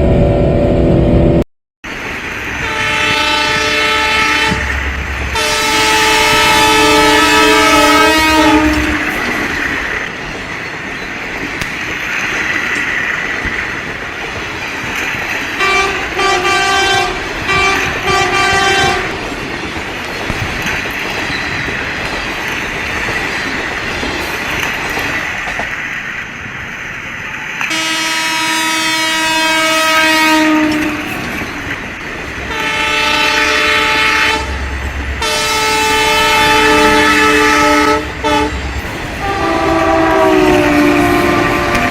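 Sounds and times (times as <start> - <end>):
train rumbling: 0.0 - 41.9
train horn blasts: 2.6 - 9.6, 15.6 - 19.2, 27.7 - 31.3, 32.5 - 41.9.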